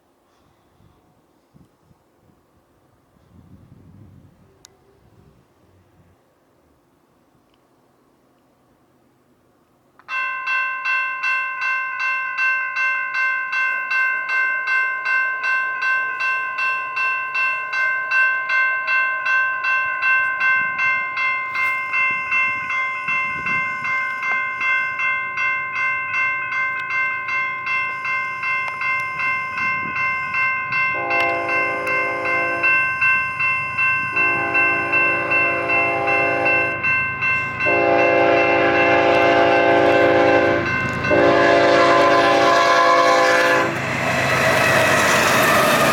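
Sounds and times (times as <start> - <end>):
low train rumble: 0.0 - 45.9
crossing signal electronic bell: 10.1 - 43.7
train air horn blasts: 30.9 - 33.0, 34.0 - 36.8, 37.6 - 43.9.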